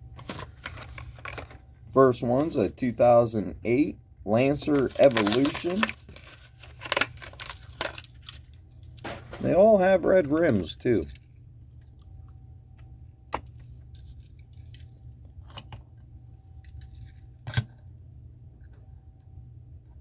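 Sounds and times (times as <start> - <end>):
steady low hum: 0.0 - 20.0
blister packaging clicks and snaps: 4.7 - 9.0.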